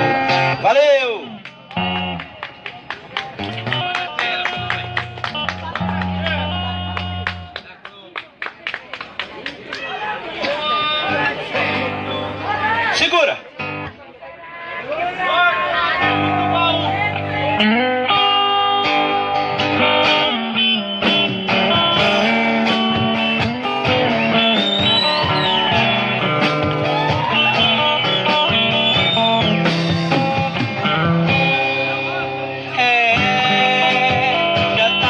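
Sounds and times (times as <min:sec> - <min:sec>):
sustained bass notes: 0:00.0 - 0:02.4, 0:03.3 - 0:07.6, 0:16.0 - 0:35.0
electric guitar lead: 0:00.0 - 0:07.6, 0:15.8 - 0:35.0.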